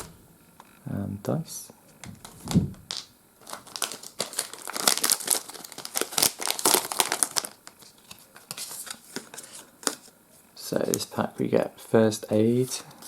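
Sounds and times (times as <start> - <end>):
plastic wrapper crinkling: 2.0 - 10.1.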